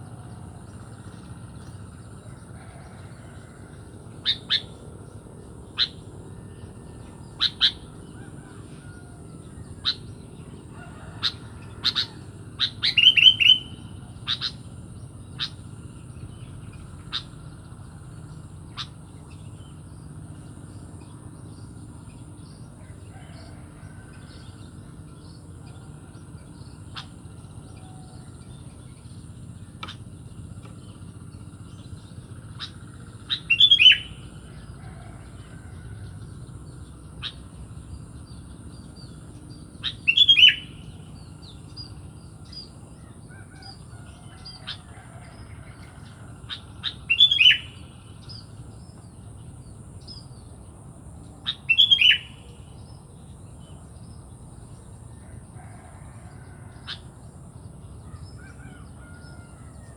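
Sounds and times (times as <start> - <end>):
bird call notes: 4.1 - 15.7, 32.5 - 36.2, 39.2 - 49.0, 51.4 - 52.8.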